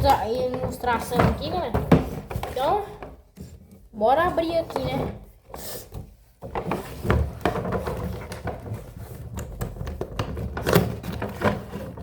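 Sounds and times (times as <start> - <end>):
cardboard rustling and scraping: 0.0 - 12.0
knocks on cardboard box: 1.2 - 2.6.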